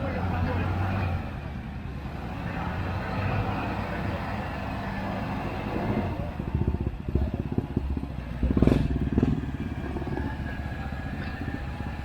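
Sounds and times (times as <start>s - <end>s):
motorcycle engine revving: 2.8s - 12.0s.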